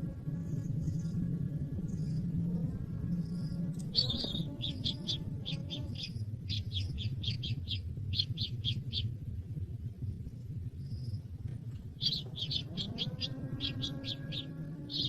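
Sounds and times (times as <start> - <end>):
steady low rumble: 0.0 - 15.0
bird chirping: 3.0 - 9.1, 12.0 - 15.0.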